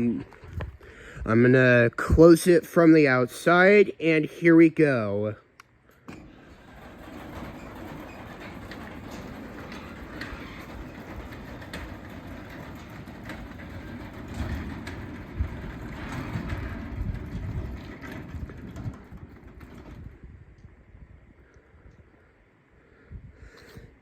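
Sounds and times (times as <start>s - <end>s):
garage door opener rumbling: 5.9s - 20.8s.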